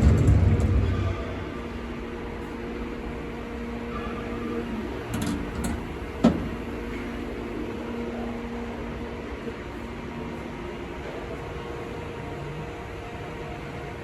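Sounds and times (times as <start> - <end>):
electric machine hum: 0.0 - 9.8.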